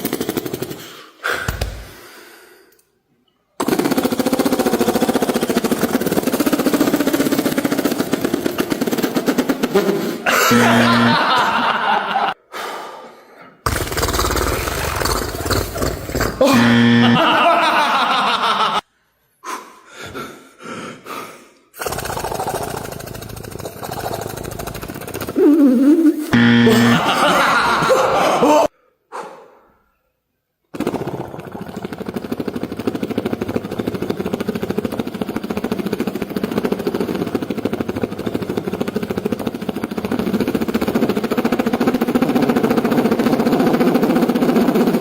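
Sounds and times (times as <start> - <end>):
fast rattling buzz: 3.6 - 11.7, 13.7 - 17.4, 21.8 - 25.6, 26.3 - 27.9, 30.8 - 45.0
laughter: 10.3 - 12.4, 16.5 - 18.9, 26.6 - 28.7.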